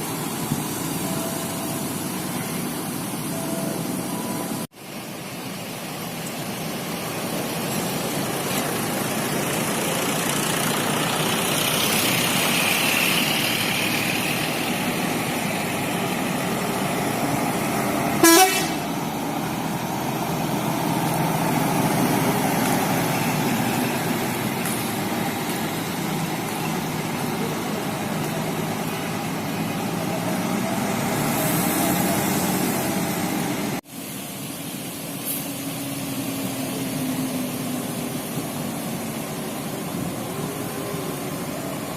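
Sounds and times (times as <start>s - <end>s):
bus engines running: 0.0s - 41.9s
multi-tone bus horn tune: 18.1s - 19.0s.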